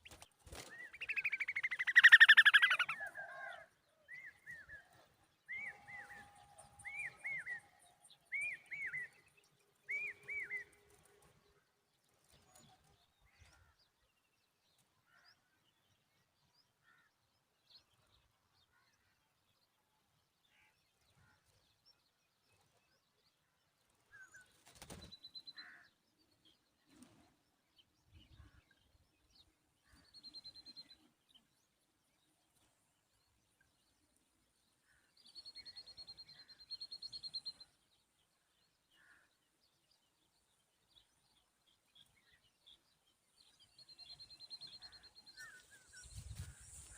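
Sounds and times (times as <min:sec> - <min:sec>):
faint bird chirps: 0:00.0 - 0:11.6
bird calling loudly: 0:01.0 - 0:03.2.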